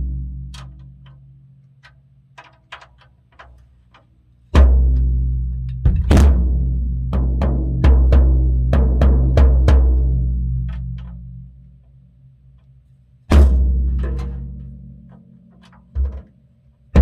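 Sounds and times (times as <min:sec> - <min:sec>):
drum kit strikes: 0:05.8 - 0:10.1.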